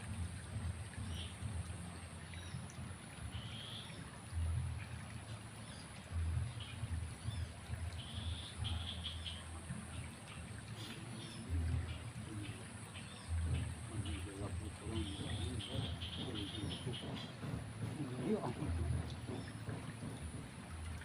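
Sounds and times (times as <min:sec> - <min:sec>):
flowing water: 0:00.0 - 0:21.0
bird chirps: 0:10.8 - 0:17.5.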